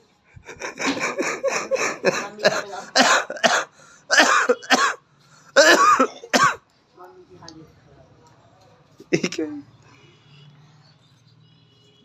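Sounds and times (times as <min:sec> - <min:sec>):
child coughing: 0:00.8 - 0:05.0, 0:05.6 - 0:06.6.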